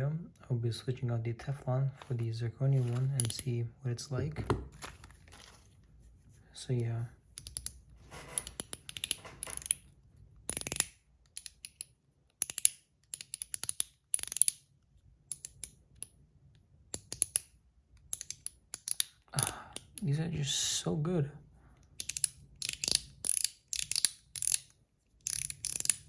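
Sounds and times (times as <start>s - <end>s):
fidget slider metallic clicks: 7.4s - 7.8s, 8.4s - 9.9s, 10.5s - 14.6s, 21.9s - 26.0s.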